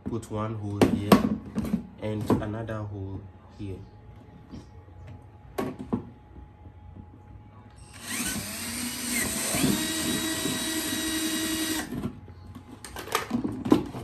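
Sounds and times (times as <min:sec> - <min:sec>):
electric drill boring plastic: 0:07.8 - 0:12.0.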